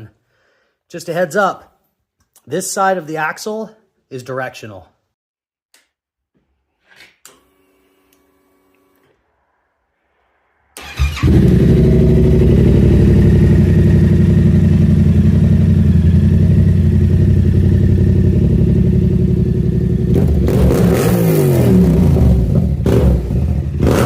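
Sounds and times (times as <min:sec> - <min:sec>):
motorcycle engine idling and revving: 0:10.8 - 0:24.0.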